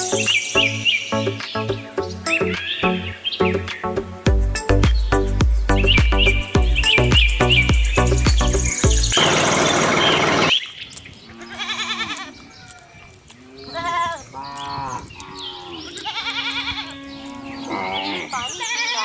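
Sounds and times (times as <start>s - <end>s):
goats bleating: 11.3s - 19.0s.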